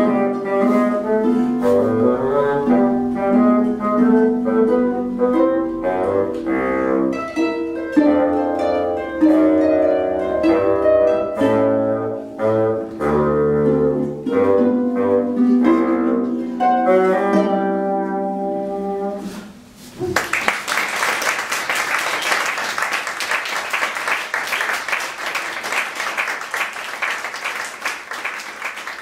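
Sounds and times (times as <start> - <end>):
plucked strings music: 0.0 - 19.1.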